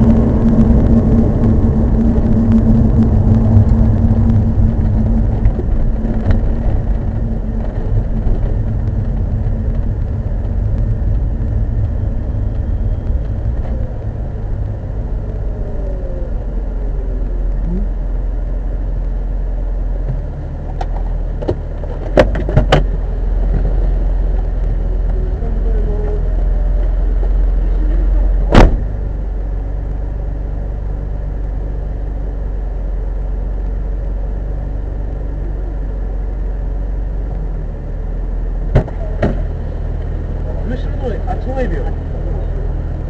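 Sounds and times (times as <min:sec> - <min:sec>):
car engine and road rumble: 0:00.0 - 0:43.0.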